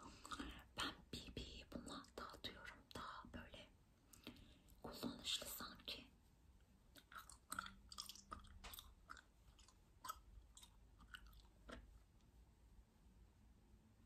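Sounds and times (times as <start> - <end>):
gum chewing: 0.0 - 1.0, 6.9 - 12.0.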